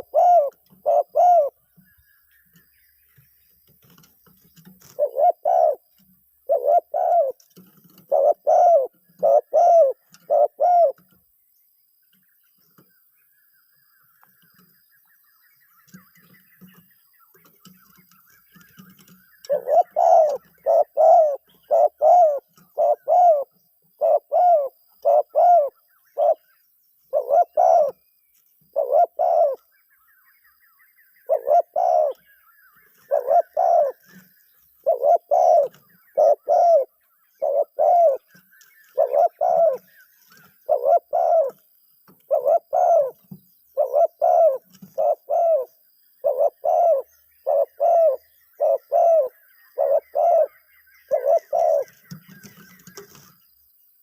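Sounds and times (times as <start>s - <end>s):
dove cooing: 0.0s - 1.6s, 4.8s - 11.2s, 18.8s - 26.5s, 27.1s - 28.0s, 28.7s - 29.6s, 31.2s - 32.2s, 32.9s - 41.6s, 42.3s - 53.3s
faint bird chirps: 0.0s - 54.0s.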